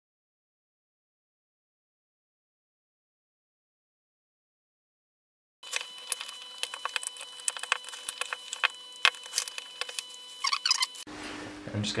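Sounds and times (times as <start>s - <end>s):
plastic parts clicking and tapping: 5.6s - 10.9s
faint electrical whine: 5.6s - 12.0s.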